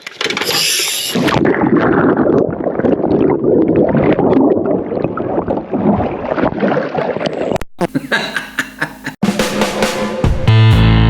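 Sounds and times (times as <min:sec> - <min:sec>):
water sloshing and gurgling: 0:00.0 - 0:07.7.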